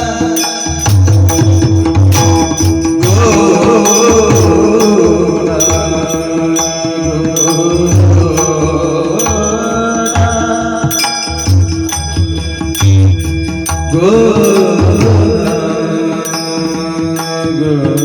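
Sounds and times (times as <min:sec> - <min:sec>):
hand drum rhythm: 0:00.0 - 0:18.0
sustained melodic accompaniment: 0:00.0 - 0:18.0.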